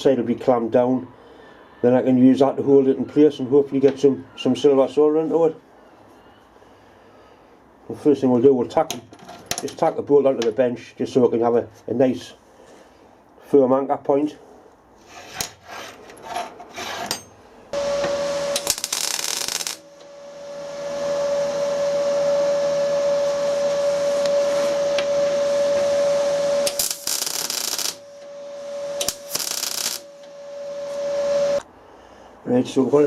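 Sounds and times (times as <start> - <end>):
electric welding arc bursts: 17.8 - 20.0, 25.4 - 31.6
welding equipment humming: 17.8 - 31.6.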